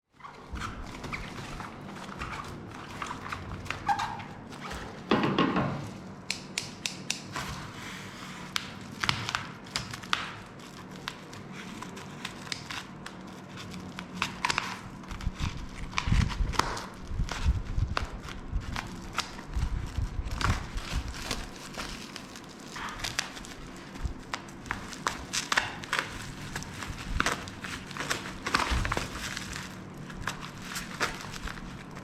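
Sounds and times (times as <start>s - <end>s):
packaging taps clicks and crinkles: 6.2s - 7.5s, 8.4s - 32.0s.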